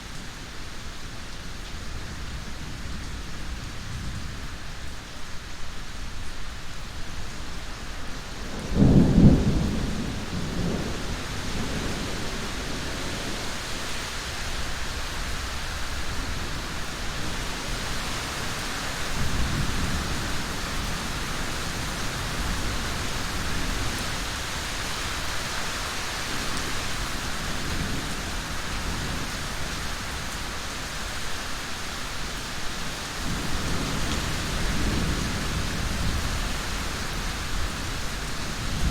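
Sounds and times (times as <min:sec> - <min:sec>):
steady rain falling: 0:00.0 - 0:38.9
thunder rumble: 0:08.5 - 0:13.4.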